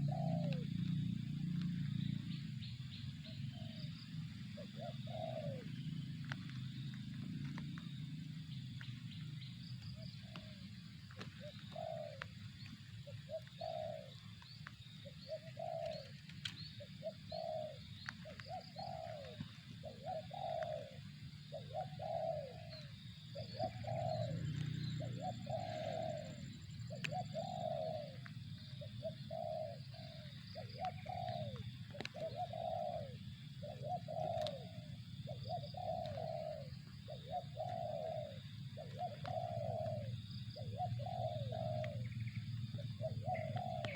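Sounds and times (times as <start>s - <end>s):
dove cooing: 0.0s - 43.9s
small birds chirping: 0.0s - 43.9s
low steady hum: 22.6s - 30.8s.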